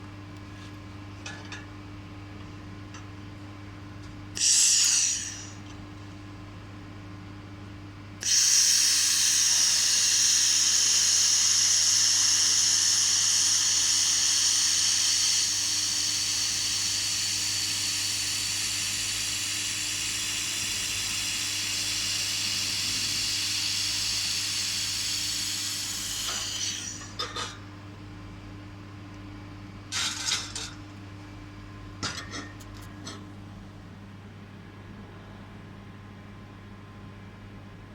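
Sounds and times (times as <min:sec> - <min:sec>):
low machine hum: 0:00.0 - 0:37.9
laser welding gun hissing: 0:04.4 - 0:05.6, 0:08.2 - 0:27.2.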